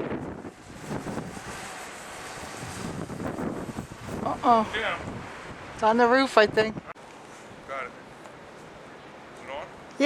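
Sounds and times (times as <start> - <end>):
wind buffeting microphone: 0.0 - 7.0.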